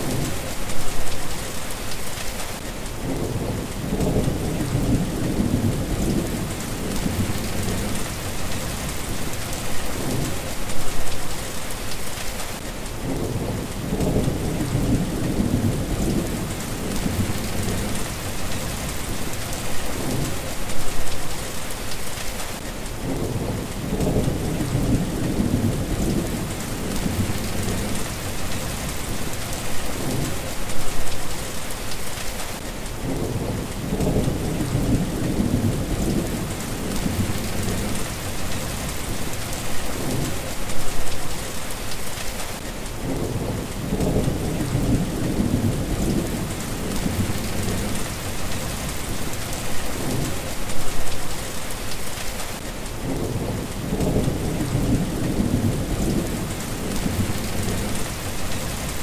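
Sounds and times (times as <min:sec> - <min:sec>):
steady rain falling: 0:00.0 - 0:59.0
low rolling thunder: 0:03.0 - 0:11.2, 0:13.0 - 0:21.1, 0:23.0 - 0:31.2, 0:33.0 - 0:41.1, 0:43.0 - 0:51.2, 0:53.0 - 0:59.0.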